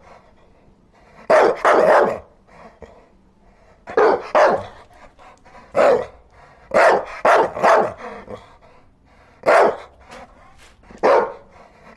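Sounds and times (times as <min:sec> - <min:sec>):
dog barking: 0:01.2 - 0:02.3, 0:03.9 - 0:04.9, 0:05.7 - 0:08.4, 0:09.4 - 0:10.3, 0:10.9 - 0:11.7.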